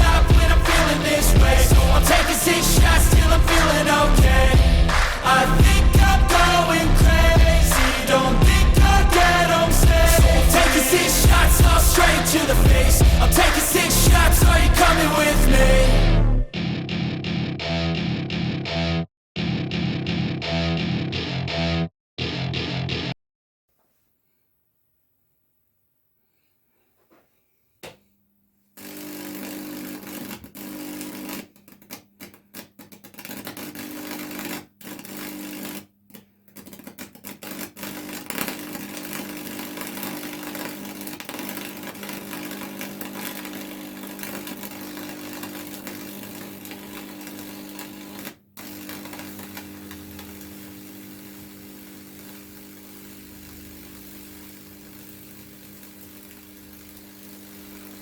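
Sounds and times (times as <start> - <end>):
electric current crackling and sizzling: 0.0 - 15.4, 36.8 - 58.0
transformer humming: 0.0 - 16.5.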